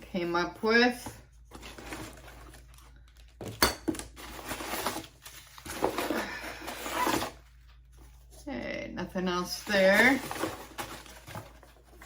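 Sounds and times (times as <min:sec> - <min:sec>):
rustling packaging: 0:01.2 - 0:08.3, 0:09.5 - 0:12.0.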